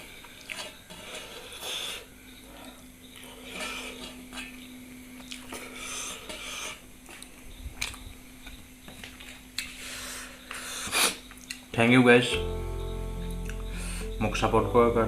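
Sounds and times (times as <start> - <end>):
faint steady hum: 0.0 - 15.0
chewing: 0.2 - 4.6, 5.2 - 9.9, 10.5 - 11.7.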